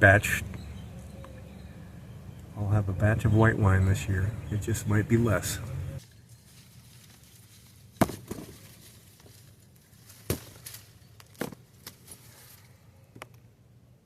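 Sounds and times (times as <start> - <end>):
grape stems snapping: 6.9 - 12.3.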